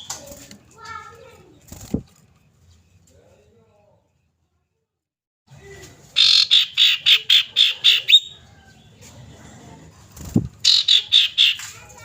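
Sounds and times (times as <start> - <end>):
bird calling harsh sharp notes: 6.2 - 8.4, 10.6 - 11.8.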